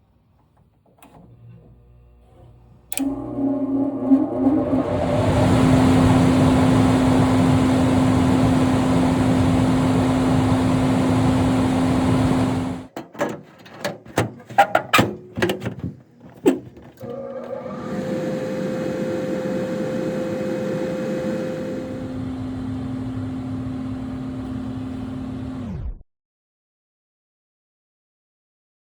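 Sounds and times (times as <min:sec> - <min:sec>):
furnace blower motor humming: 0:02.9 - 0:12.9, 0:17.0 - 0:25.7
clicks and knocks: 0:12.9 - 0:17.1.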